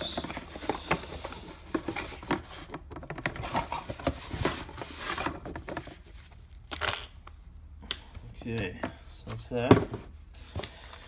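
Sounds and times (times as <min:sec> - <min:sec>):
cardboard and packaging rustling: 0:00.0 - 0:07.0.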